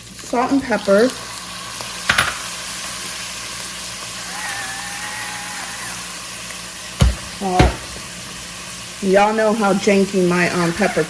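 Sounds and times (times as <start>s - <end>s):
meat sizzling in a frying pan: 0.0s - 11.0s
sharp knocks: 7.0s - 8.0s.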